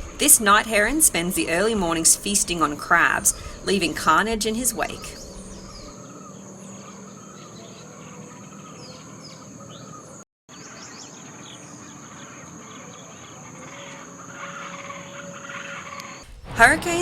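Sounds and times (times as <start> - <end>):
bird chirps: 0.0 - 17.0
high-pitched insect drone: 10.6 - 16.2.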